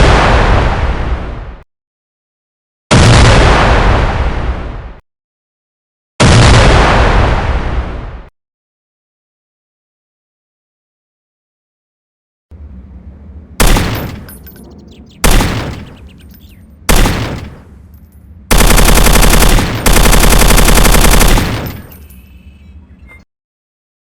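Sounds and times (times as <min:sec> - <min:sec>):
machine gun firing: 0:13.6 - 0:14.5, 0:15.2 - 0:16.2, 0:16.9 - 0:17.7, 0:18.5 - 0:22.1.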